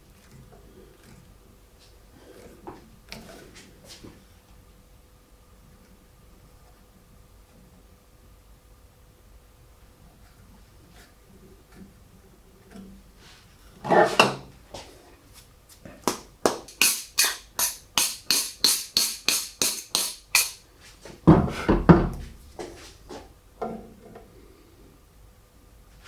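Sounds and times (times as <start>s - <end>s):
knocks of part being handled: 16.1s - 20.6s
hand file rasping plastic: 16.5s - 20.6s.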